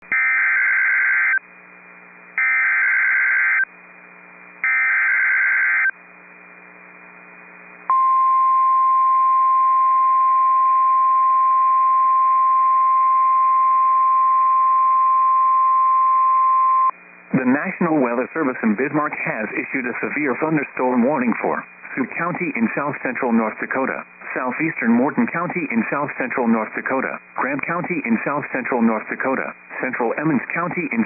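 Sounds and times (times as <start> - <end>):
steady warning alarm tone: 4.6 - 5.9
faint radio hiss: 6.0 - 7.9, 16.9 - 31.0.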